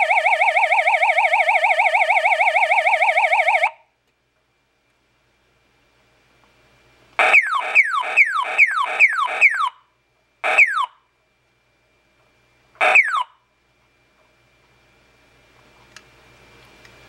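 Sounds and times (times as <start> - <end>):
electronic horn zap tones: 7.2 - 9.6.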